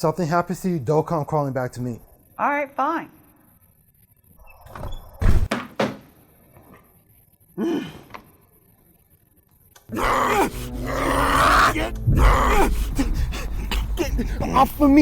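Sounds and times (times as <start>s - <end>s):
rough growling roar: 10.0s - 13.6s.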